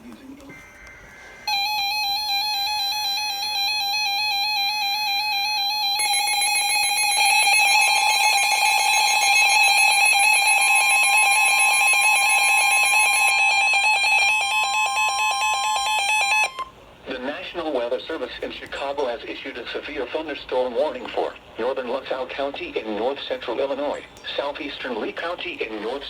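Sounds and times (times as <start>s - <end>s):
electronic alarm tone: 0.5s - 16.8s
higher alarm tone: 0.5s - 16.8s.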